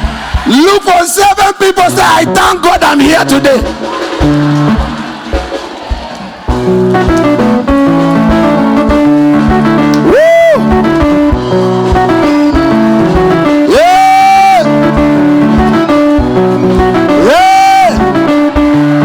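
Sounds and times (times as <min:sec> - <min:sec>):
live church band music: 0:00.0 - 0:19.0.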